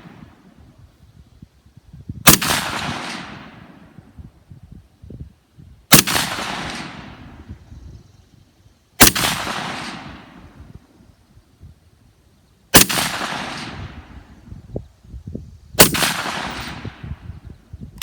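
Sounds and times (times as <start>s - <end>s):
rifle shots with echo: 2.2s - 4.2s, 5.9s - 7.5s, 9.0s - 10.6s, 12.7s - 14.3s, 15.8s - 17.2s.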